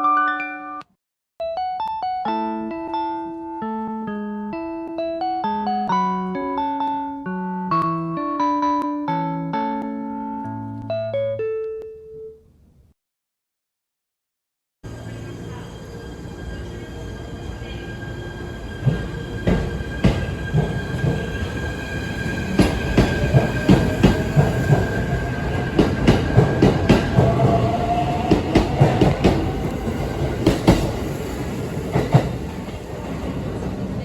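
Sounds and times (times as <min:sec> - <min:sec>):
train rumbling on rails: 0:14.9 - 0:34.0
wheels clacking over rail joints: 0:22.3 - 0:27.7.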